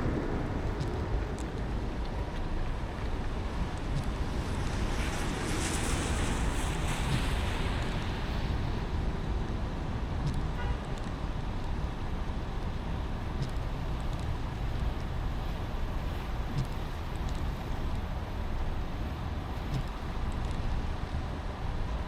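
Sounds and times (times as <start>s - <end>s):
car driving on wet road: 0.0s - 21.6s
faint ticks: 19.6s - 20.6s.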